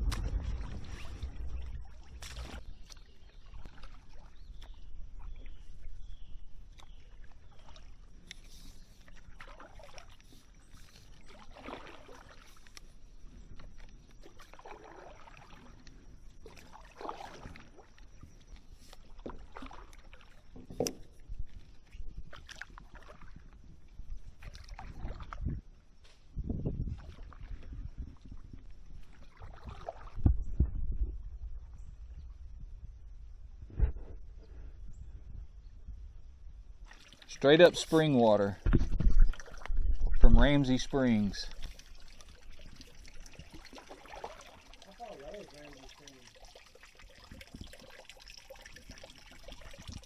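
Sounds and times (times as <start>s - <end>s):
paddle splashing in water: 0.0s - 25.6s, 26.9s - 30.4s, 36.8s - 50.0s
water dripping off paddle: 0.1s - 5.9s, 6.6s - 12.9s, 13.5s - 21.7s, 40.4s - 50.0s.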